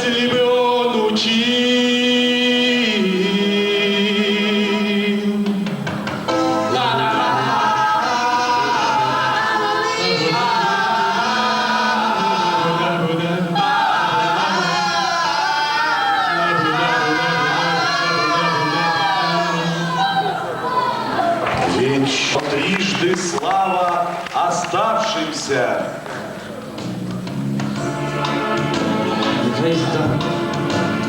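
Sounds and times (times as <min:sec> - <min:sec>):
backing music: 0:00.0 - 0:20.1, 0:21.4 - 0:31.0
several voices singing: 0:00.0 - 0:21.8.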